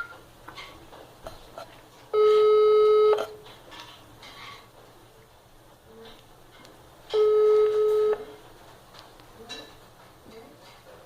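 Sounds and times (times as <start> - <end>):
telephone ringback tone: 2.2 - 3.2, 7.2 - 8.4.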